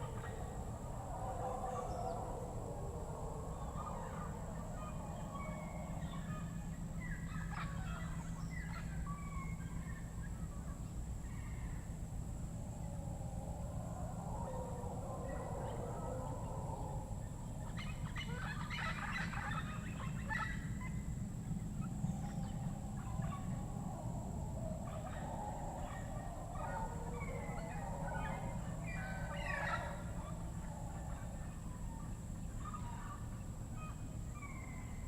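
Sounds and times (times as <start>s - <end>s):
birds warbling chorus: 0.0s - 35.0s
birds gobbling chatter: 13.9s - 35.0s.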